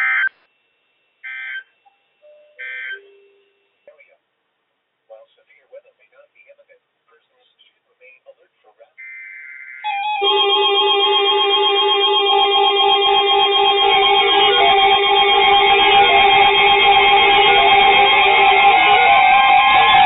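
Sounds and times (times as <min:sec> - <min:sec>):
instrumental music: 0:09.8 - 0:20.0.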